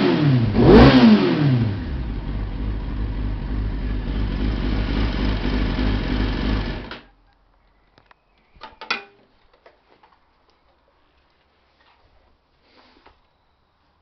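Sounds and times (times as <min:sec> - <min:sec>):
motorcycle engine running: 0:00.0 - 0:07.1.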